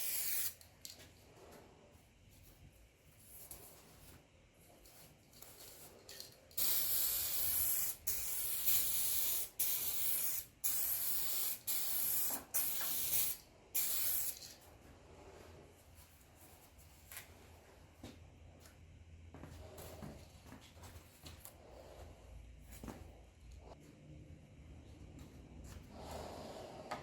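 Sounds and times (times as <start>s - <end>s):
aerosol can spraying: 0.0s - 0.6s, 6.6s - 14.4s.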